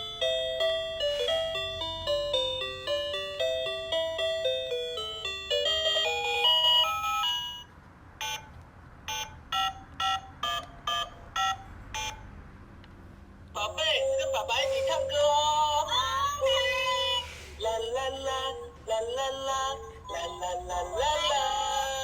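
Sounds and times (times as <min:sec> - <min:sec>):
toy telephone melody: 0:00.0 - 0:08.5, 0:09.1 - 0:12.2, 0:13.7 - 0:18.5, 0:19.2 - 0:22.0
button beeps: 0:08.2 - 0:08.5, 0:09.1 - 0:12.3.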